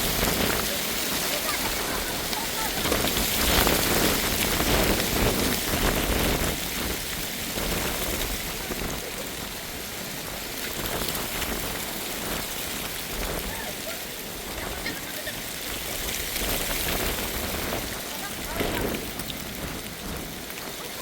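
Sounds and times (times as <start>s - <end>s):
heavy rain falling: 0.0s - 21.0s.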